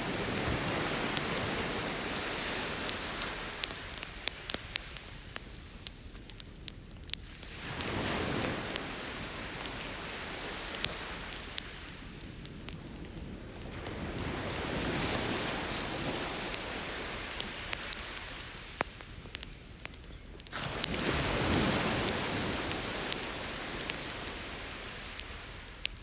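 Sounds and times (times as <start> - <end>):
bonfire logs crackling: 0.0 - 26.0
ocean waves washing onto beach: 0.0 - 26.0.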